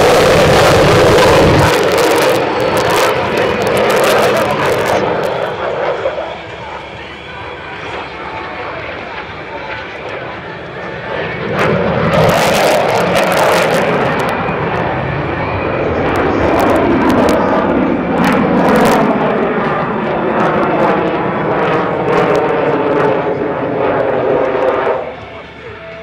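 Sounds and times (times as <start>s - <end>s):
crackling bursts: 0.0s - 6.2s
jet engine roar: 0.0s - 26.0s.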